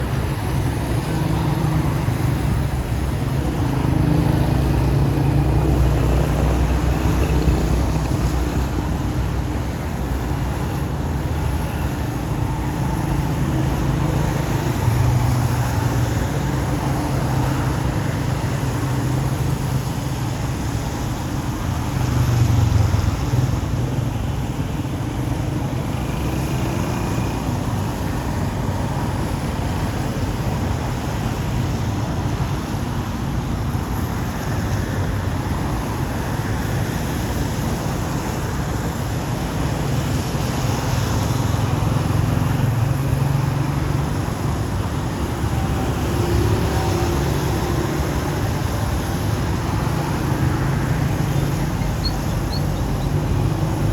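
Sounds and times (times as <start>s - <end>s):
motor engine rumbling: 41.7s - 53.9s.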